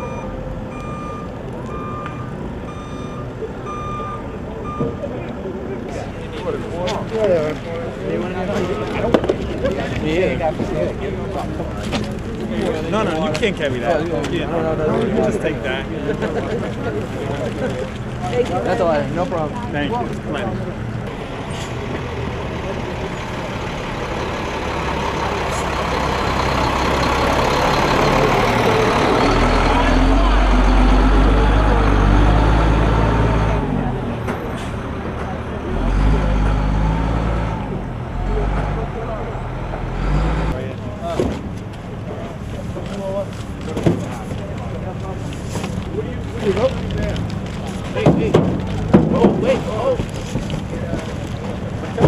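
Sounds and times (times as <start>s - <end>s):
reverse warning beeper: 0.0s - 5.1s
low engine rumble: 0.0s - 52.0s.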